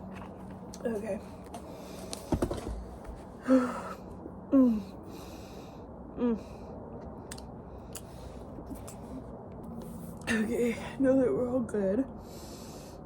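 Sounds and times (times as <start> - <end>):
faint steady hum: 0.0 - 13.0
woman sighing: 3.4 - 5.0.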